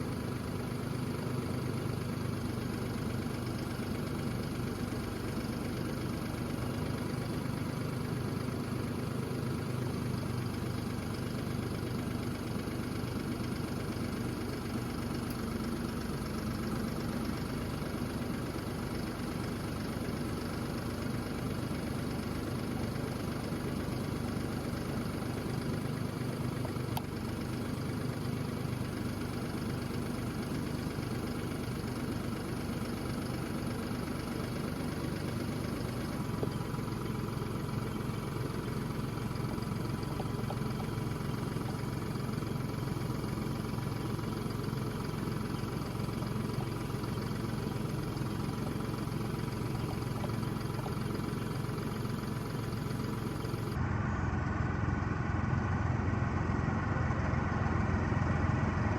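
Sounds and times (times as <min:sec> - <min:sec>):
tractor engine droning: 0:00.0 - 0:58.9.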